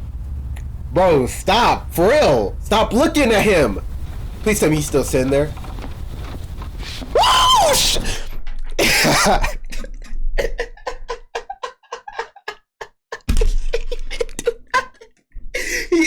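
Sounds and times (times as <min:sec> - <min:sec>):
short noisy bursts: 0:00.0 - 0:08.3.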